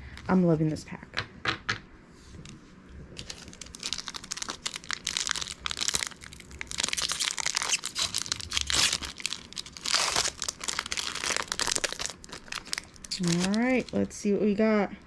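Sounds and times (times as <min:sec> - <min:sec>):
wrapper crinkling and tearing: 0:03.2 - 0:14.2.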